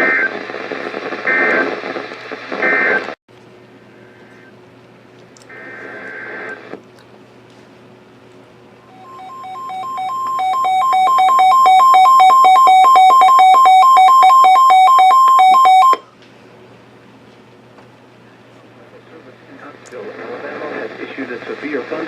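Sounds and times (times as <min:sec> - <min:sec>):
two-tone radio alarm: 0:08.9 - 0:16.1.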